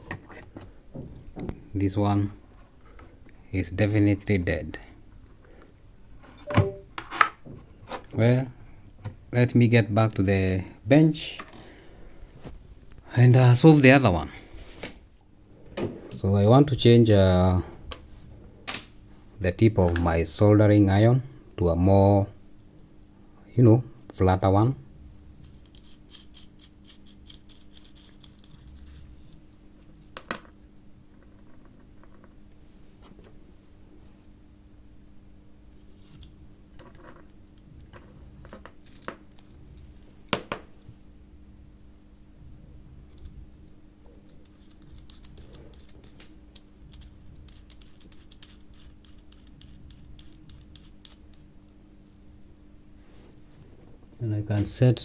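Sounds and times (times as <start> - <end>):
steady low hum: 0.0 - 55.0
small metal parts clinking: 25.6 - 29.4, 44.3 - 51.3.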